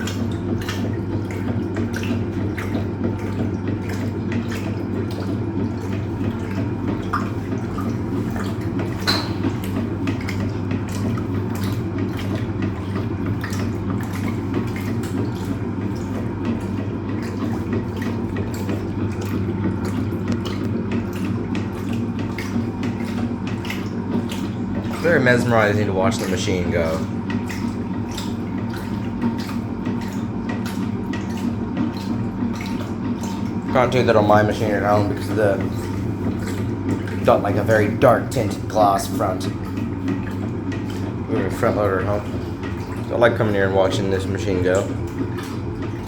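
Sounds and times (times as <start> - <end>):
washing machine motor hum: 0.0 - 46.0
water sloshing and splashing: 0.0 - 46.0.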